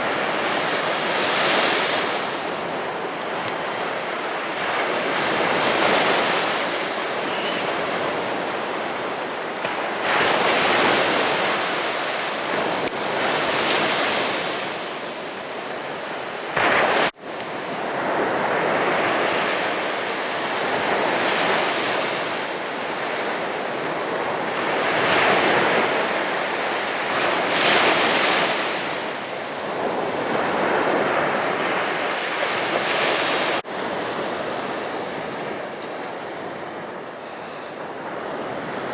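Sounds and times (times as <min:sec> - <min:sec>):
sea waves breaking on beach: 0:00.0 - 0:38.9.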